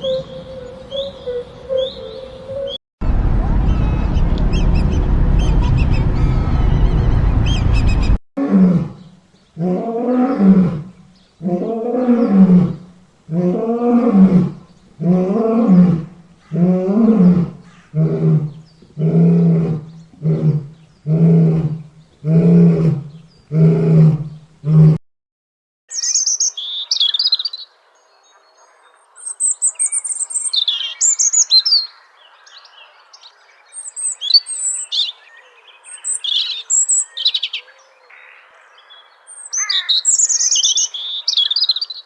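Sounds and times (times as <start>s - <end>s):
loud steady rumbling: 0.0s - 8.2s
lion roaring: 9.6s - 25.0s.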